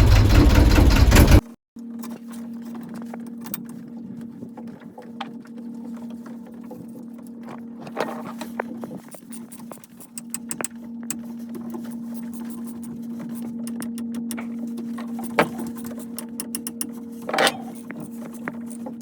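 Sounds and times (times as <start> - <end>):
steady machine hum: 0.0 - 1.4, 3.0 - 19.0
handling clicks and knocks: 7.9 - 19.0.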